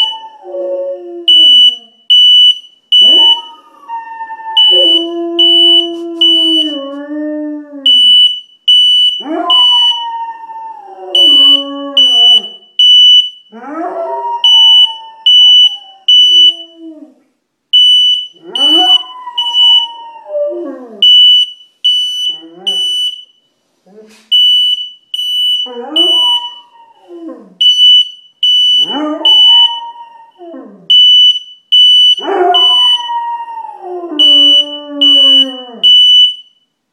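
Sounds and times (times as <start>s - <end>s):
smoke alarm beeping: 1.3s - 3.3s, 4.6s - 6.8s, 7.9s - 10.0s, 11.2s - 13.5s, 17.8s - 19.9s, 21.0s - 23.5s, 24.3s - 26.6s, 27.6s - 29.8s, 30.9s - 33.1s, 34.2s - 36.7s
dog howling: 18.4s - 21.0s, 28.9s - 30.9s, 32.2s - 35.8s.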